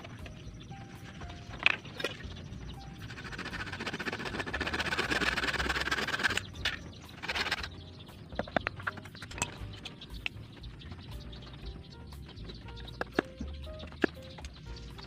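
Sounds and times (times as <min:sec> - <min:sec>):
rasping scrape: 0:03.0 - 0:07.8.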